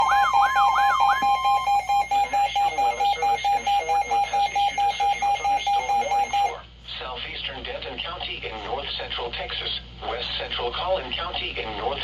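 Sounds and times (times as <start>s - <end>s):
steady tone: 0.0s - 6.5s
warbling siren sweep: 0.0s - 6.5s
weather radio alarm beeping: 0.0s - 6.5s.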